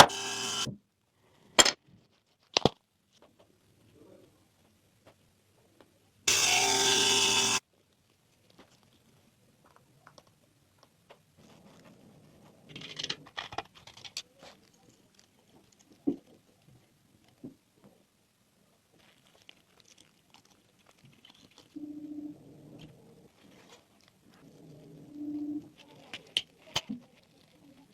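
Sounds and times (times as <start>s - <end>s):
scratchy rustle: 22.8s - 27.9s.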